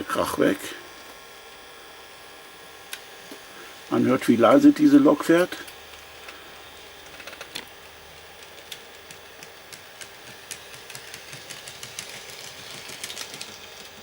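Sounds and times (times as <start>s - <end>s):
model train humming: 0.0s - 14.0s
light clacks of model train: 8.4s - 14.0s.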